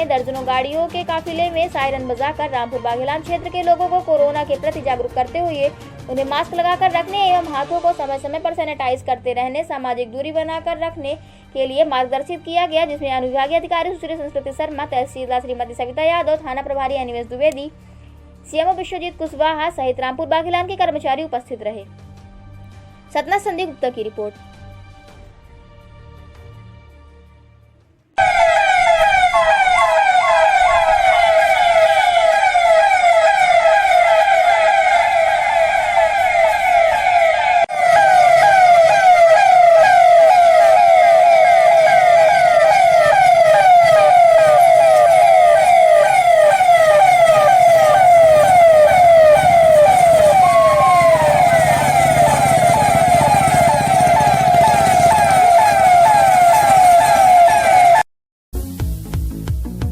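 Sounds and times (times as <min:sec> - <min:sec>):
siren yelping: 0:28.2 - 0:58.1.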